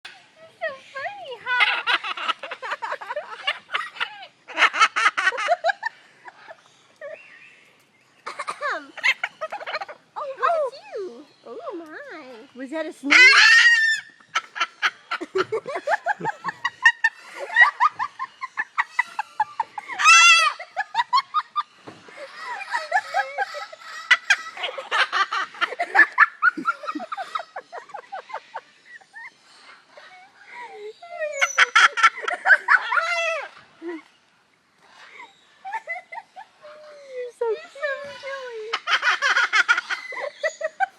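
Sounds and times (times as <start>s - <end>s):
people laughing: 14.4s - 23.9s, 24.5s - 29.3s.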